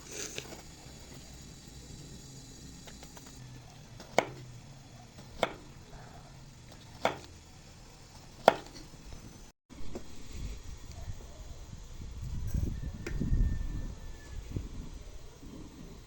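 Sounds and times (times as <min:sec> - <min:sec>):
knife chopping on cutting board: 0:04.0 - 0:04.4, 0:05.3 - 0:05.6, 0:06.9 - 0:07.3, 0:08.4 - 0:08.8.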